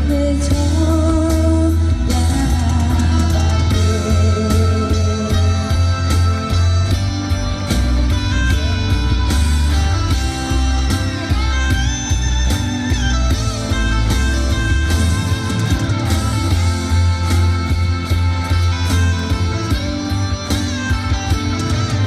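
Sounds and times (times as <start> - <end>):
bass: 0.0 - 22.0
guitar playing: 0.0 - 22.0
drum beat: 5.3 - 22.0.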